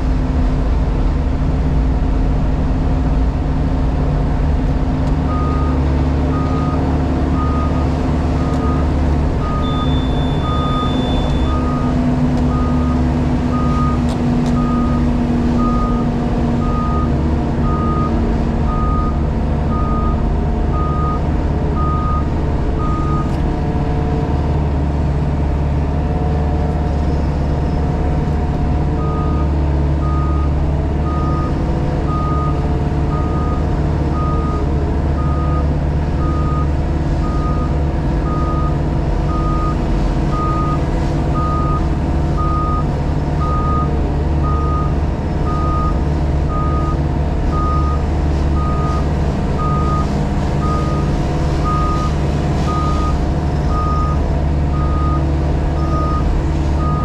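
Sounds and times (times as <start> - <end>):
diesel engine running: 0.0 - 57.0
reversing alarm beeping: 5.3 - 21.2, 42.4 - 57.0.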